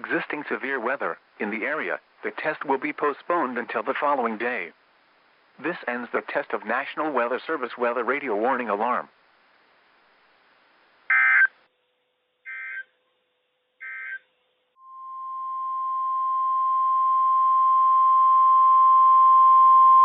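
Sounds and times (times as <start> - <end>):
steady warning alarm tone: 12.5 - 12.9, 13.8 - 14.2.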